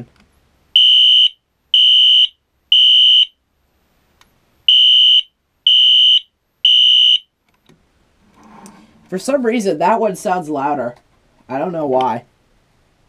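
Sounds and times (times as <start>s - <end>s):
fire alarm horn beeping: 0.8s - 3.3s, 4.7s - 7.3s.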